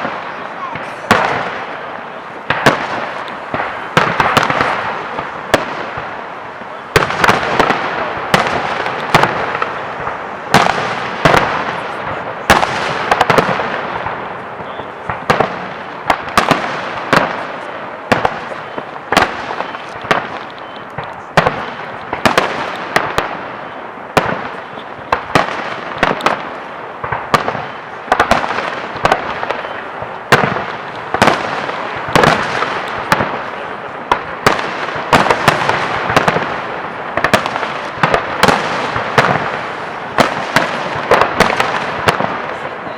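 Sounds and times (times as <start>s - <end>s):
firework shells bursting: 0.0s - 11.8s, 24.1s - 33.5s
fireworks crackling: 0.0s - 42.9s.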